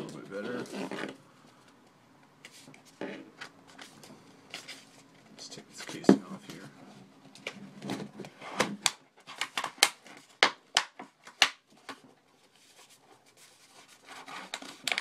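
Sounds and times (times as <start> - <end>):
faint packaging rustling: 0.0 - 10.4
packaging crackling and clicking: 14.2 - 15.0.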